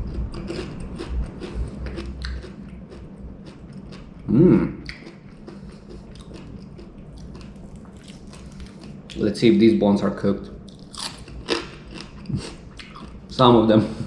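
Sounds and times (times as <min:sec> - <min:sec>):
crunchy chewing: 0:00.0 - 0:09.2, 0:10.7 - 0:13.4
person humming mmm: 0:04.3 - 0:04.9.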